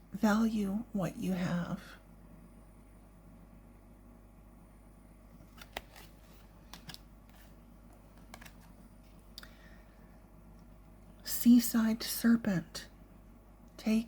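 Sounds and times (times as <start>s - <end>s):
low room hum: 0.0s - 14.0s
cards clicking and tapping: 5.4s - 8.8s.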